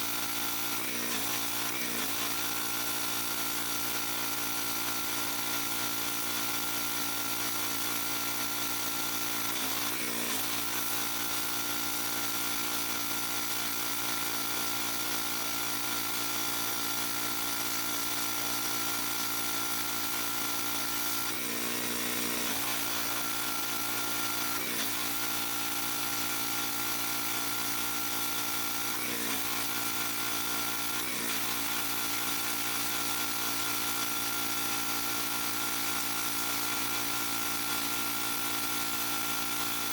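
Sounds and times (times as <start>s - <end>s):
pressure washer running: 0.0s - 39.9s.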